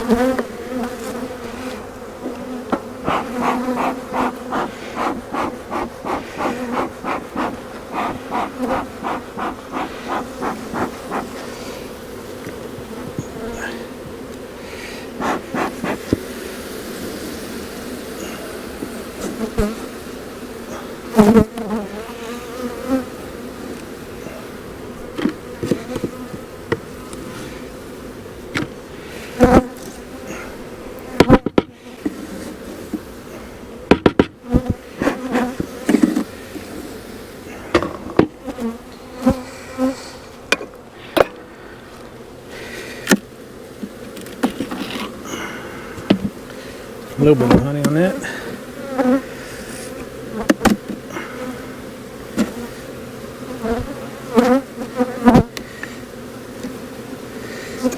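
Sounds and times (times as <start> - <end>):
bees buzzing: 0.0 - 57.9
wooden hive boxes knocking: 2.3 - 11.5, 25.1 - 27.2, 31.1 - 32.2, 33.8 - 36.4, 37.7 - 38.7, 46.0 - 48.2, 50.0 - 51.1.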